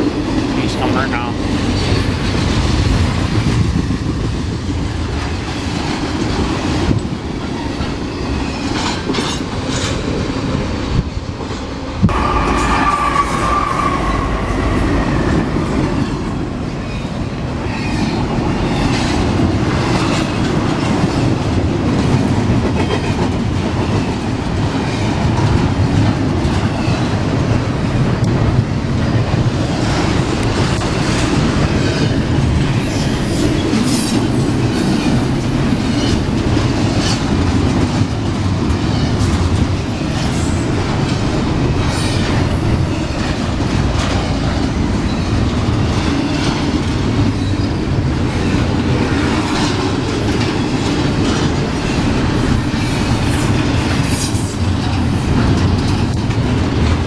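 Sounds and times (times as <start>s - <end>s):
freight train rolling past: 0.0s - 57.0s
high wheel squeal: 12.1s - 15.0s
wheels clacking over rail joints: 17.7s - 57.0s.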